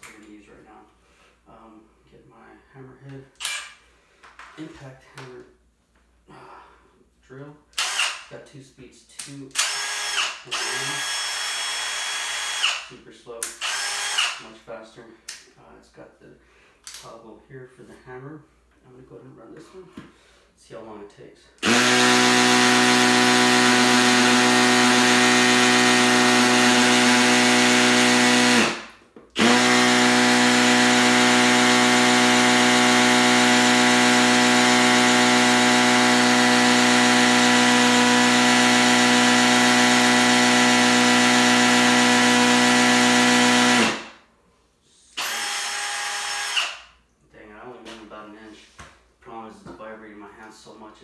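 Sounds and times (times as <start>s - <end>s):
hammer drill boring into concrete: 7.8s - 8.3s, 9.6s - 12.9s, 13.5s - 14.4s, 21.6s - 44.1s, 45.2s - 46.8s.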